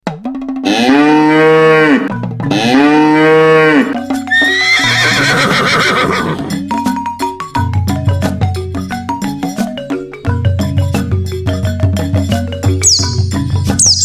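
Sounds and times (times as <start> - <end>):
cow mooing: 0.6 - 6.5
high wavering animal cry: 0.7 - 6.8, 12.8 - 14.0
background music: 2.2 - 14.0.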